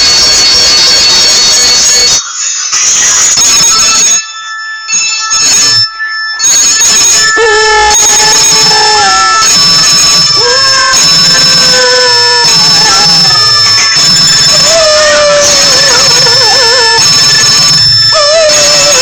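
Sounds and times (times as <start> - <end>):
high-pitched electronic tones: 0.0 - 19.0
dog howling: 7.3 - 19.0.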